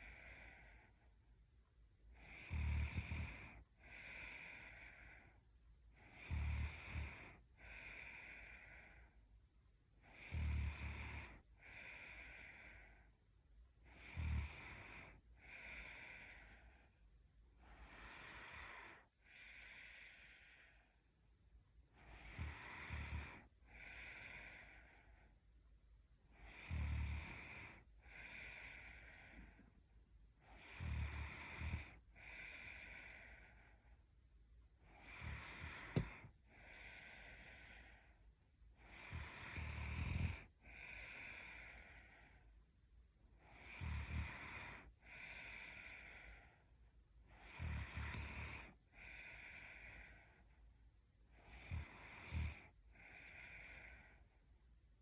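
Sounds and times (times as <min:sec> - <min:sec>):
woman snoring: 0:02.1 - 0:05.3, 0:06.0 - 0:09.2, 0:10.0 - 0:13.0, 0:13.8 - 0:16.9, 0:17.6 - 0:20.9, 0:21.9 - 0:25.2, 0:26.3 - 0:29.7, 0:30.4 - 0:33.8, 0:34.8 - 0:38.1, 0:38.7 - 0:42.4, 0:43.4 - 0:46.6, 0:47.2 - 0:50.2, 0:51.3 - 0:54.2.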